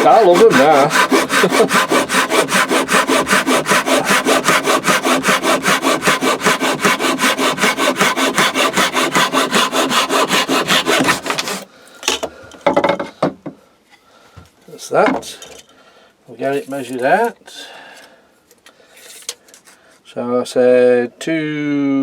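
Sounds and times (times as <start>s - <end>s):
hand saw cutting wood: 0.0s - 11.7s.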